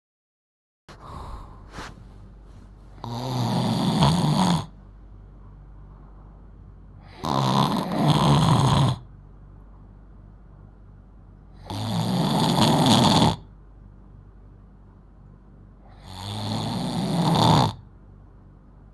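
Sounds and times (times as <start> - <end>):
girl snoring loudly: 0.9 - 2.0, 3.0 - 4.7, 7.0 - 9.0, 11.6 - 13.4, 15.9 - 17.8.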